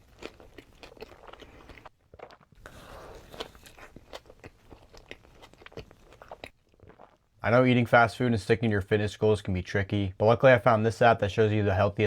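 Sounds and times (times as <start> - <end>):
crunchy chewing of food: 0.0 - 7.3.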